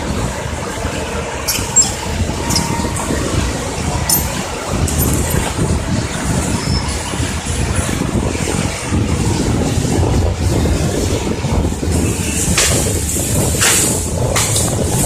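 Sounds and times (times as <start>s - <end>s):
high metallic squeal: 1.4s - 3.4s
sharp metal clanks: 4.1s - 4.4s.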